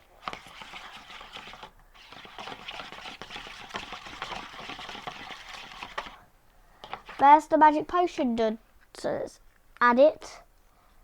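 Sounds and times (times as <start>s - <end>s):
slime being stirred crackling: 0.0s - 6.2s, 6.8s - 7.4s.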